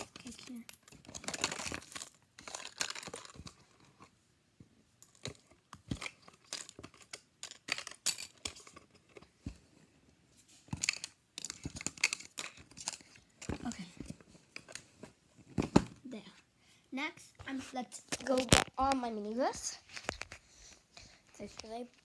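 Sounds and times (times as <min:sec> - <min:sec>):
crinkly packaging rustles: 0:00.0 - 0:04.2, 0:10.5 - 0:16.0, 0:17.4 - 0:22.0.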